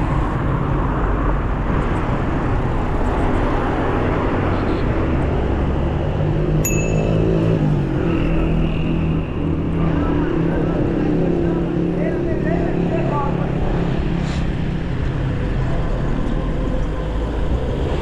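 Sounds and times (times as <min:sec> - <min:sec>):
traffic noise: 0:00.0 - 0:18.0
metallic ping: 0:06.6 - 0:07.6.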